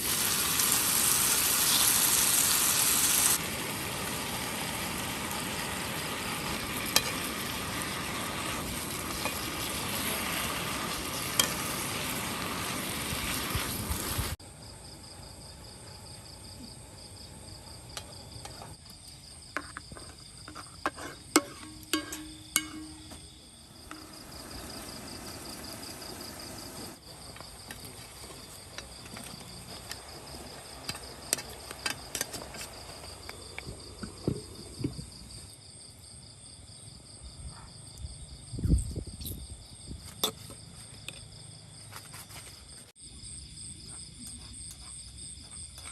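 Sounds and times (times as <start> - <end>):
food sizzling in a hot pan: 0.0 - 14.4, 23.7 - 27.0
insects chirring: 0.0 - 45.9
utensils clinking on cookware: 19.6 - 23.2.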